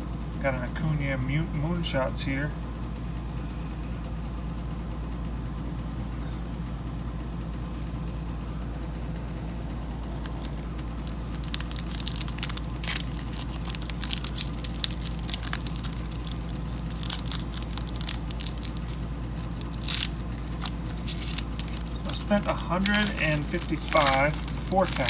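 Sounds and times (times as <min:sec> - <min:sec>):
steady low hum: 0:00.0 - 0:25.0
card wrapper crinkling: 0:10.0 - 0:25.0.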